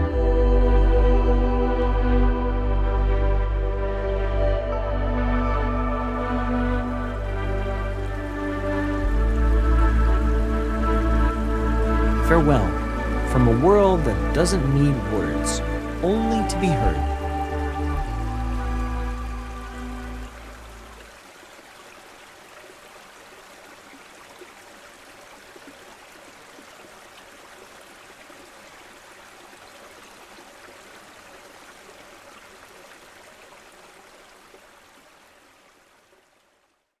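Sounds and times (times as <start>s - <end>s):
music: 0.0s - 21.0s
stream water trickling and gurgling: 5.9s - 37.0s.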